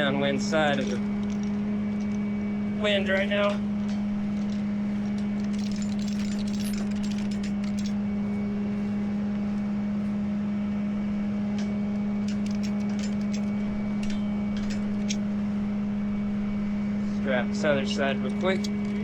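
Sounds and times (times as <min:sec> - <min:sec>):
tow truck engine humming: 0:00.0 - 0:19.0
short clicks and rattles: 0:00.4 - 0:08.0, 0:11.5 - 0:15.5, 0:17.0 - 0:19.0.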